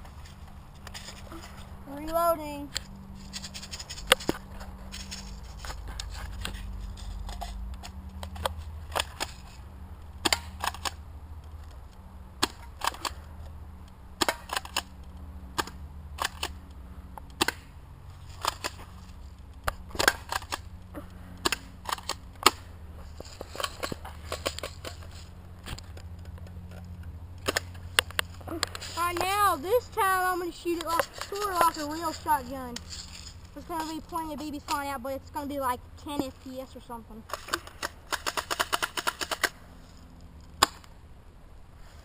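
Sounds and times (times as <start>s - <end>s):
toy shotgun pumping and firing: 30.7s - 33.0s, 37.3s - 39.6s.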